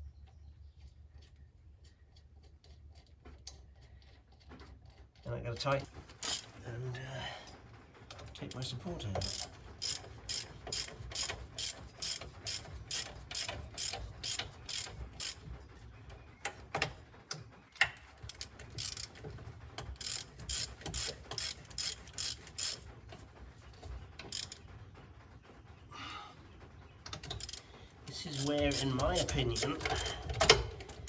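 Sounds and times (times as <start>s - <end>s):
ratchet wrench clicking: 6.2s - 6.5s, 9.2s - 15.4s, 18.3s - 19.2s, 20.0s - 22.8s, 24.3s - 24.6s, 27.4s - 27.6s, 28.3s - 30.6s.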